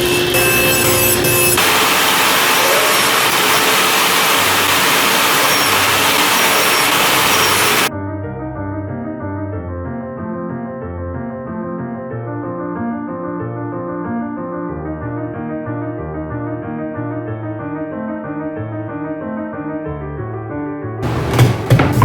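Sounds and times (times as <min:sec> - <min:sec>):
woodworking power tool running: 0:00.0 - 0:07.9
piano music: 0:04.2 - 0:22.0.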